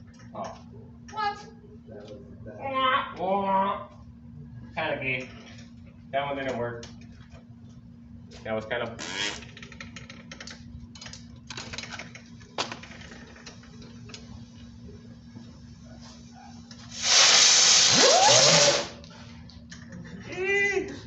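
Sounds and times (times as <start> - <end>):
firework hissing: 16.9 - 19.0.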